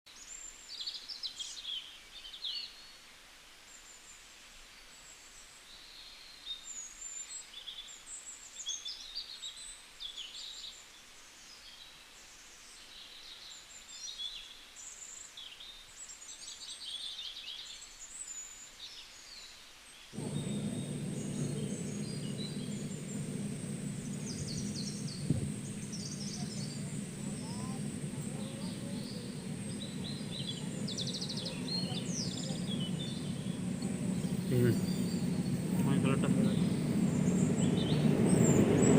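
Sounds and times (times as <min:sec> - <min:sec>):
small birds chirping: 0:20.2 - 0:38.9
steady low hum: 0:20.2 - 0:38.9
thin high whine: 0:20.2 - 0:38.9.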